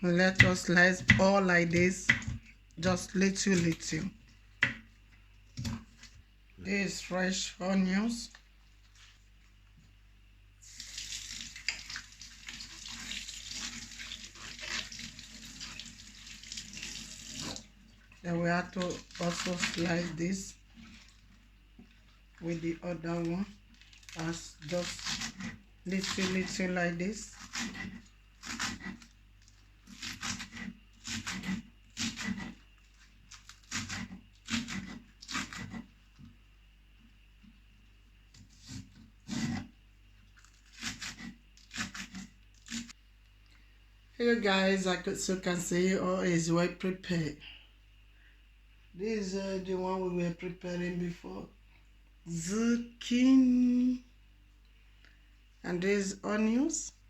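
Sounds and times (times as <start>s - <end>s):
tap water running into sink: 10.7s - 17.7s
knife slicing vegetables: 18.4s - 21.1s, 22.5s - 32.6s, 33.3s - 35.9s, 38.3s - 39.7s, 40.4s - 42.9s.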